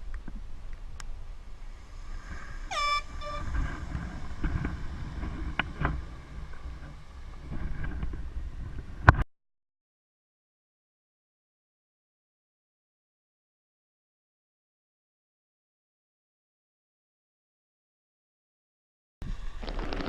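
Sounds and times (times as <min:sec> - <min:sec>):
low rumble: 0:00.0 - 0:09.2
air horn blasts: 0:02.4 - 0:04.4.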